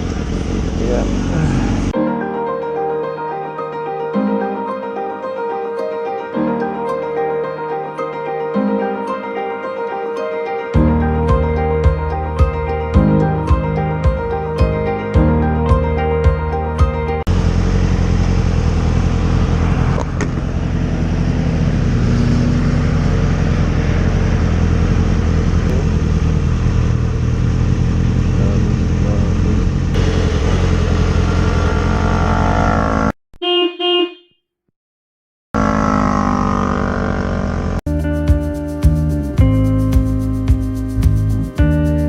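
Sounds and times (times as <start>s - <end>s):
motorcycle engine running: 0.0s - 1.9s, 17.3s - 33.1s, 35.6s - 37.8s.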